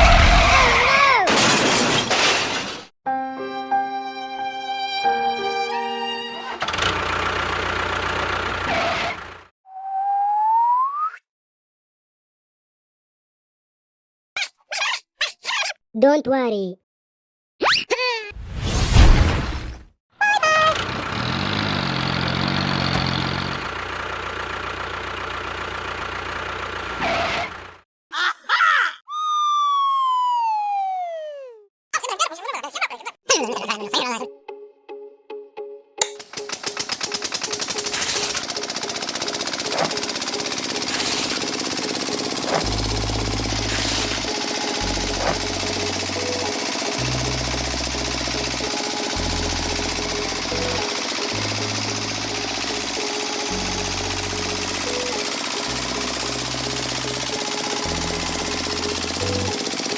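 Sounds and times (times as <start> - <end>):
engine idling: 6.5 - 9.5, 20.6 - 27.8, 36.1 - 59.9
small electric motors buzzing: 20.5 - 27.6, 36.2 - 59.9
pitched hum: 36.0 - 59.9.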